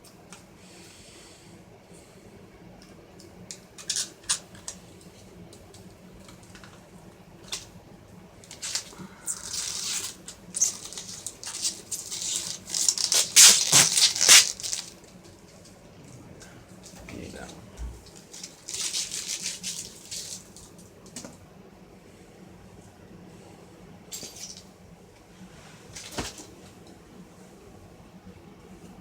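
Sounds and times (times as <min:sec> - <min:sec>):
plastic film peeling and crackling: 0:08.5 - 0:15.0, 0:18.2 - 0:20.6.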